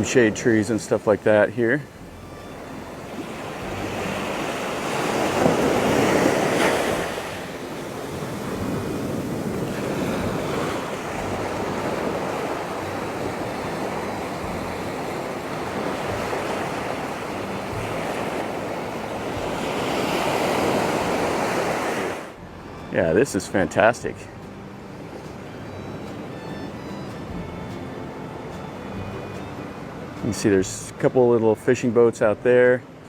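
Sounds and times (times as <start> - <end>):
waves washing onto beach: 0.0 - 22.4.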